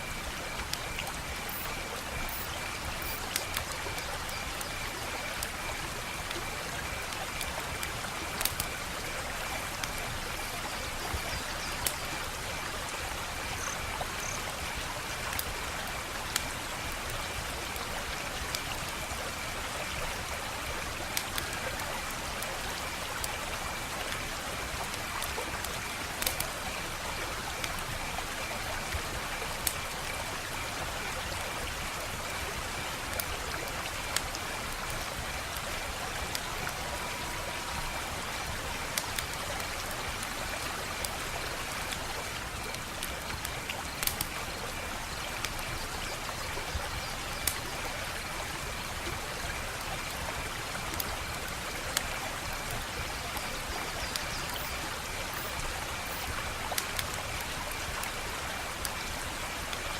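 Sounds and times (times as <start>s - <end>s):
wood fire crackling: 0.4s - 10.3s, 24.7s - 26.6s, 38.6s - 45.6s, 47.4s - 47.8s, 54.4s - 59.0s.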